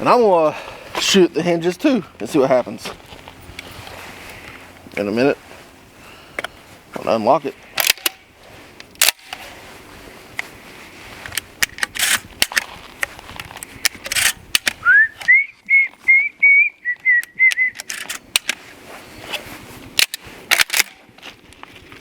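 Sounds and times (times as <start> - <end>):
person whistling: 14.8 - 17.9.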